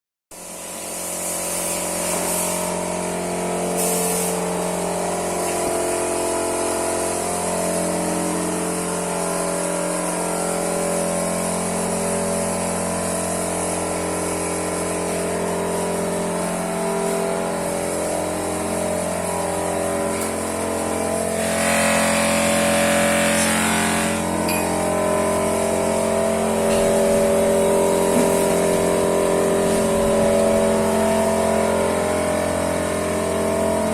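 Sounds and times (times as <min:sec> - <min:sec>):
vacuum pump running: 0:00.4 - 0:33.9
air hissing: 0:03.7 - 0:04.4.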